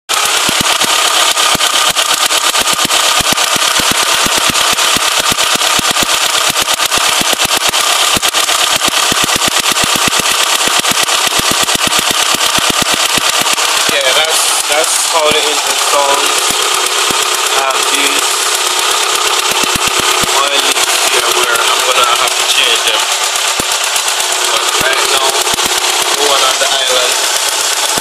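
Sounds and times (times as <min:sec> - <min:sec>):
car engine ticking loudly: 0:00.1 - 0:28.0.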